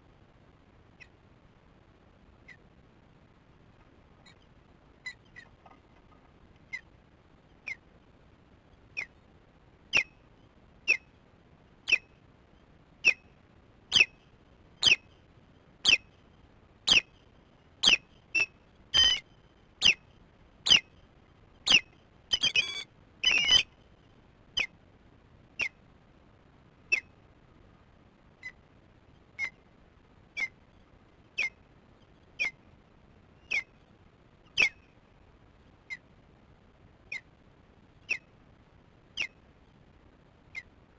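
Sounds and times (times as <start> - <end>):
bird alarm calls: 11.9 - 12.1, 13.9 - 14.2, 14.8 - 15.0, 15.8 - 16.0, 16.9 - 17.1, 17.8 - 19.2, 19.8 - 20.0, 21.7 - 23.7, 31.4 - 31.6, 32.4 - 32.6, 33.4 - 33.7, 34.5 - 34.8.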